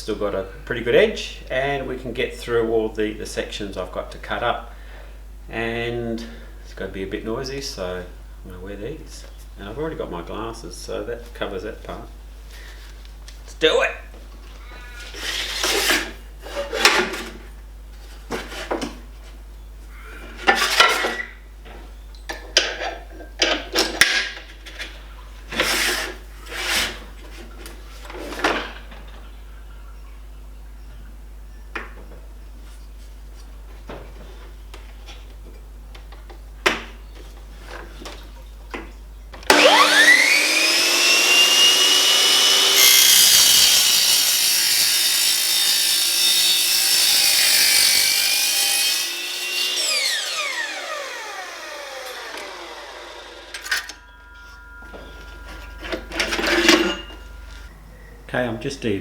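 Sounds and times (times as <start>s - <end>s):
power saw whining: 39.5s - 57.8s.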